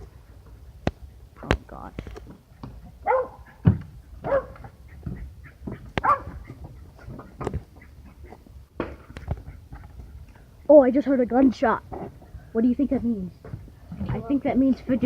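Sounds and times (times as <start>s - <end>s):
dog barking and yipping: 2.9s - 8.4s
sharp knocks: 8.8s - 9.4s.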